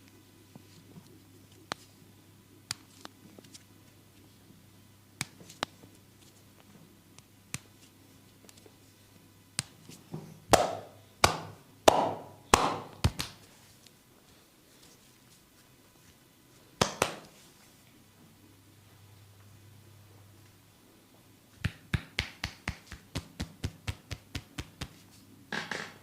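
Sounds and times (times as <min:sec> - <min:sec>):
hands slapping skin: 0:05.2 - 0:05.8, 0:09.6 - 0:09.9, 0:10.5 - 0:13.4, 0:16.8 - 0:17.4, 0:21.6 - 0:25.0.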